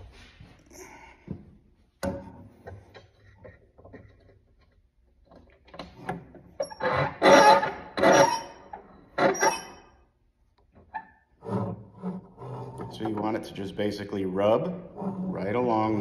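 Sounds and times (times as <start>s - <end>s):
metallic scraping: 6.6s - 9.9s.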